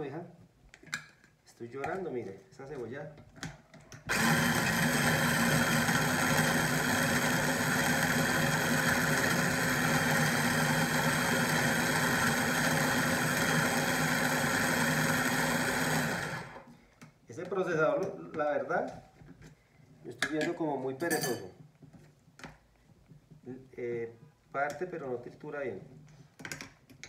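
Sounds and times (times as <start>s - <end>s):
food processor chopping onion: 4.1s - 16.7s.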